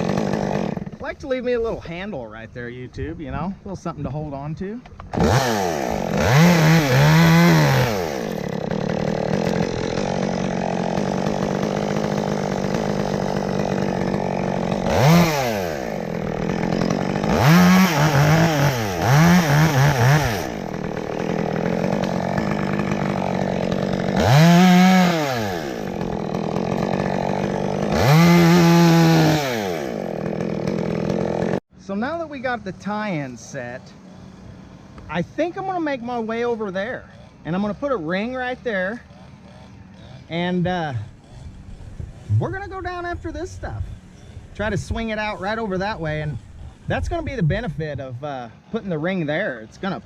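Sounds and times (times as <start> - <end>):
chainsaw revving: 0.0 - 2.5, 4.8 - 31.6, 32.7 - 50.0.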